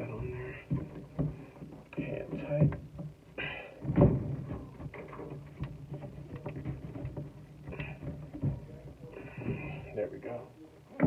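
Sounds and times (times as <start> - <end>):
knock: 3.8 - 8.7.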